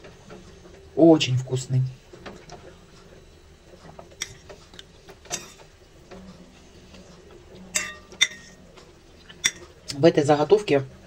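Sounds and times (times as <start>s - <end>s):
spoon clinking against bowl: 7.8s - 8.6s, 9.4s - 9.7s.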